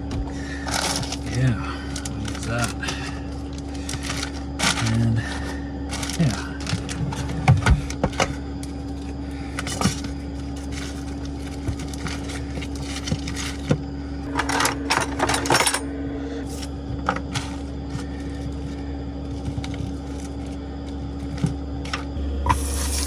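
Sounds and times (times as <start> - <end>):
steady low hum: 0.0 - 23.0
utensils clicking and clinking: 0.6 - 18.0.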